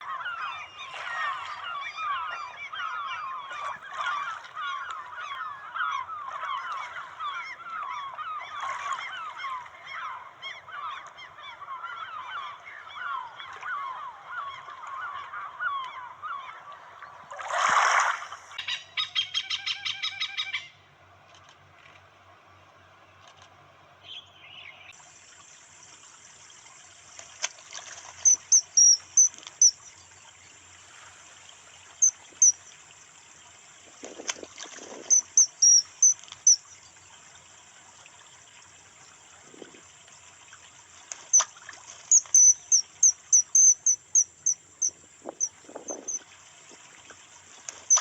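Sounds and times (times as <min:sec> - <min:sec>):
fast pulsed bird notes: 0:28.3 - 0:29.8, 0:35.1 - 0:36.6, 0:42.1 - 0:46.2.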